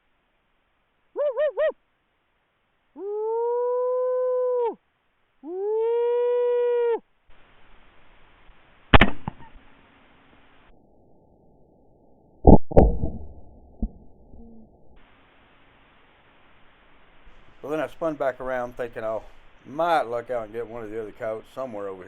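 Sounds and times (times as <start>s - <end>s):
coyote howl calls: 1.2s - 1.8s, 3.0s - 4.8s, 5.4s - 7.0s
rifle shot: 8.9s - 9.5s.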